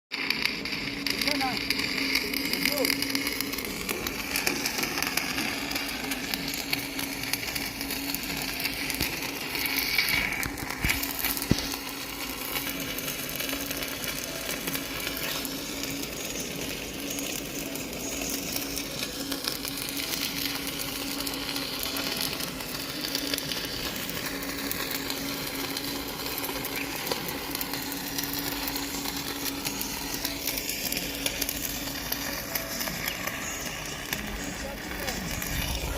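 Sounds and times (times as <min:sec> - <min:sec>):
welding arc crackling: 0:00.1 - 0:35.9
steady low hum: 0:20.2 - 0:35.9.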